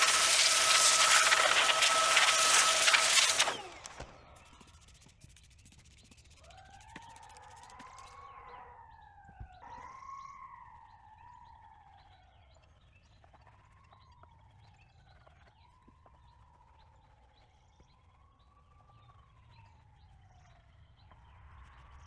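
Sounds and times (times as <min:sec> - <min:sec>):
loud hissing spray: 0:00.0 - 0:04.0.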